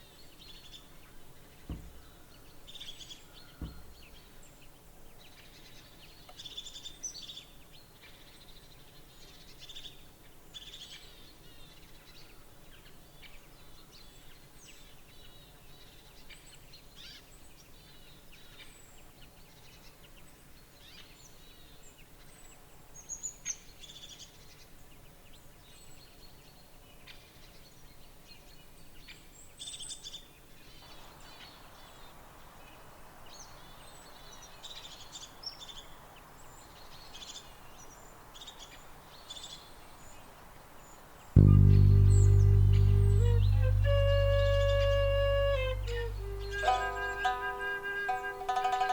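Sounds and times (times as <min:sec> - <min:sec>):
faint steady hiss: 0:41.4 - 0:48.4.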